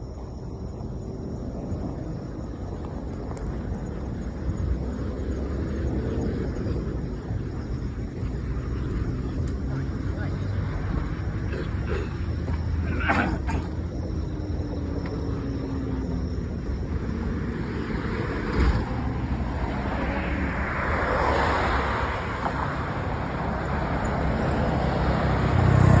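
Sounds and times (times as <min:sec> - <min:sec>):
road traffic rumble: 0:00.0 - 0:26.0
vehicle passing by: 0:13.7 - 0:26.0.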